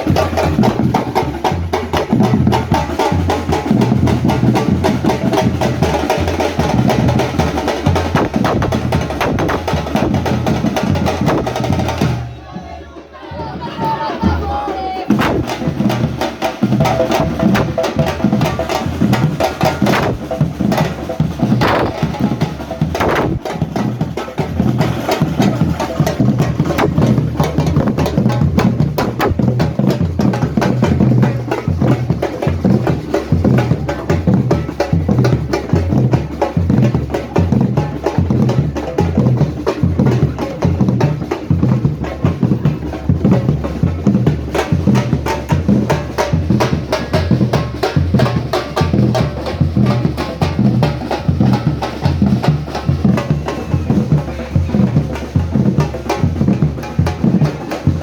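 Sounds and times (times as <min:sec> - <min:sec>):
low drum beats: 0:00.0 - 0:58.0
sharp clacking percussion strikes: 0:15.1 - 0:36.0.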